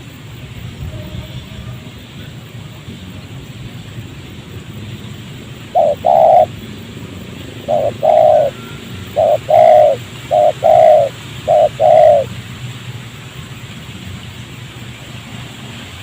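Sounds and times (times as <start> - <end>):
steady low hum: 0.0 - 16.0
dove cooing: 5.7 - 12.4.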